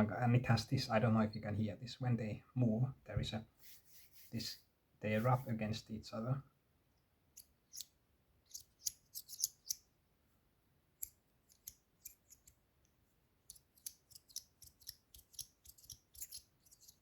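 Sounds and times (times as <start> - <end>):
metal fidget slider scraping: 8.5 - 9.8.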